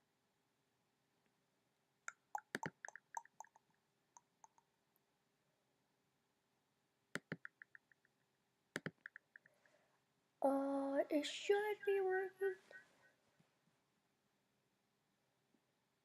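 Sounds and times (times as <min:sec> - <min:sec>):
computer mouse clicking: 0:02.1 - 0:04.6, 0:07.2 - 0:08.0, 0:08.8 - 0:09.5.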